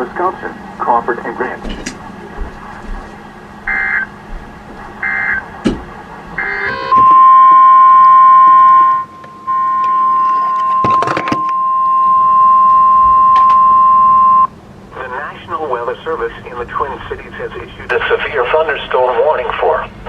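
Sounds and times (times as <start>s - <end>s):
steady warning alarm tone: 0.0s - 15.4s
digital data tones: 6.4s - 14.5s.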